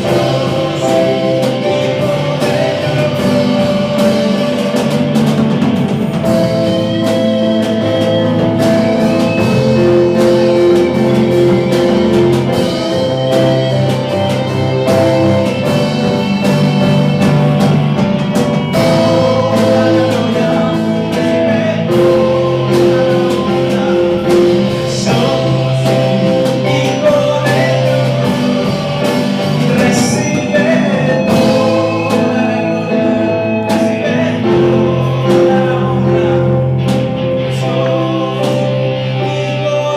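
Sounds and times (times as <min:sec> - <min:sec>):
person singing worship song: 0:00.0 - 0:07.1, 0:18.6 - 0:39.9
guitar and band with held chords: 0:00.0 - 0:39.9.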